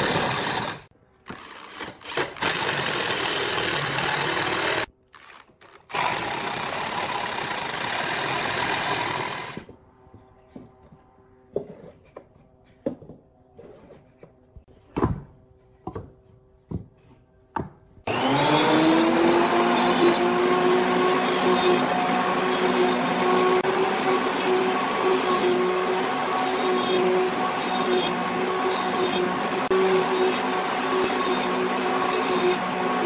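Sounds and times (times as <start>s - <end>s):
electric power tool whining: 0.0s - 0.9s, 1.7s - 4.9s, 5.9s - 9.7s, 18.1s - 33.0s.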